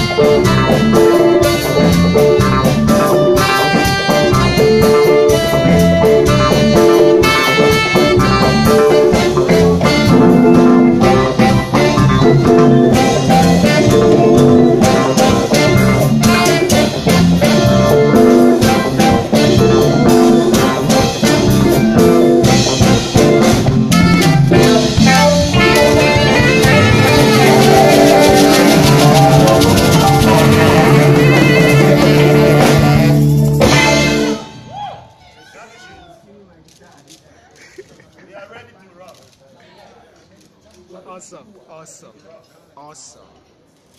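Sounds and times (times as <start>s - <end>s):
brass horns: 0.0s - 34.7s
electric guitar: 0.0s - 34.7s
drum kit: 0.0s - 34.9s
live band playing: 0.0s - 35.5s.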